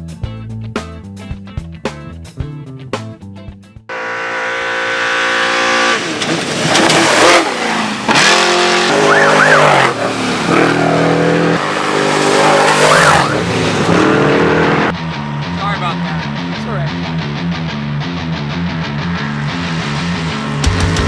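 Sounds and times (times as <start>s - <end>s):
race vehicle engine revving: 3.9s - 21.0s.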